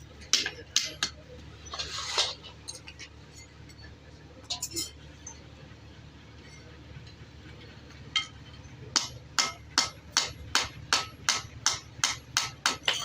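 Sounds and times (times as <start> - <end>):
hammer striking metal: 8.2 - 13.0.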